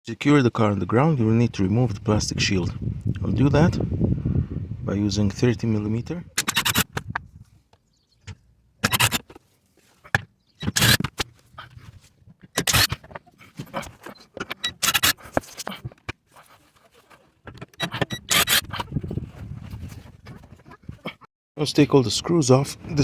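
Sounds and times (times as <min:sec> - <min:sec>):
wrench scraping and clicking: 0:06.4 - 0:07.1, 0:08.8 - 0:09.4, 0:10.1 - 0:11.3, 0:12.5 - 0:16.5, 0:17.5 - 0:18.8.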